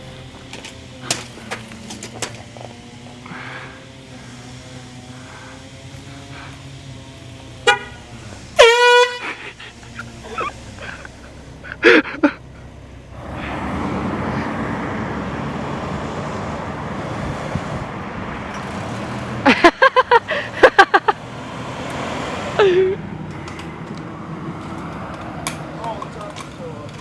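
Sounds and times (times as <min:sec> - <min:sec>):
air horn blasts: 0:06.0 - 0:09.8
steady rushing noise: 0:13.1 - 0:26.5.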